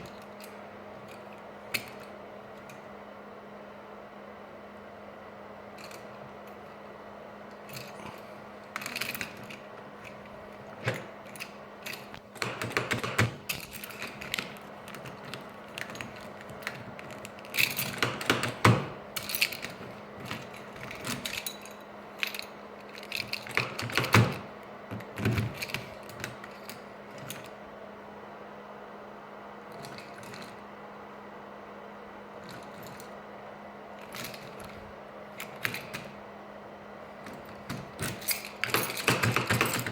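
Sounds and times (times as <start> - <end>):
steady low hum: 0.0 - 39.9
mechanical clicks and clunks: 7.5 - 27.6.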